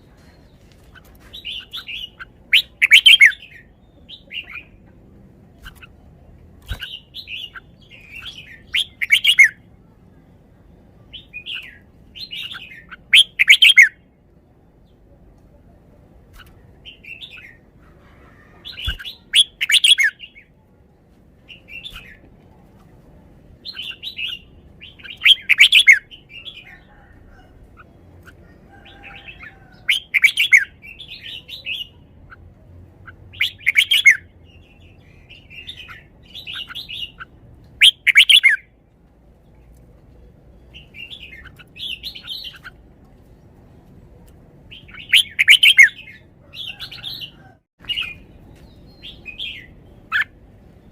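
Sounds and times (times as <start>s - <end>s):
bird singing loud phrases: 1.3s - 4.8s, 6.7s - 9.6s, 11.1s - 14.0s, 16.4s - 17.7s, 18.6s - 20.6s, 23.6s - 27.1s, 28.9s - 38.7s, 40.5s - 42.8s, 44.7s - 50.9s
bird chirping softly: 23.6s - 50.9s.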